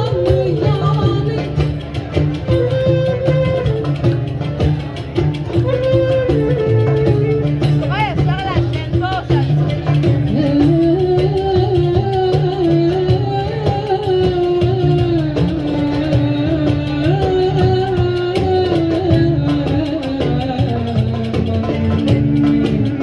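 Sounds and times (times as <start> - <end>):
folk music with percussion: 0.0 - 23.0.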